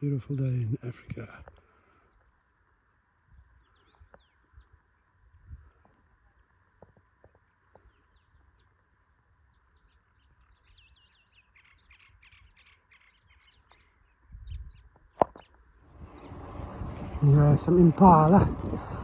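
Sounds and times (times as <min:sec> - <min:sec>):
wind rumble on microphone: 0:03.3 - 0:06.0, 0:14.2 - 0:19.0
birds chirping and trilling: 0:03.3 - 0:19.0.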